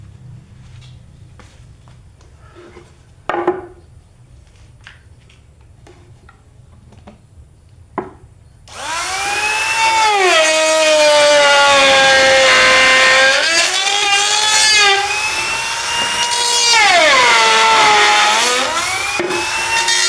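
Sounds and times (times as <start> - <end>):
router motor whining: 8.7 - 20.0
wood and tools clattering: 8.7 - 20.0.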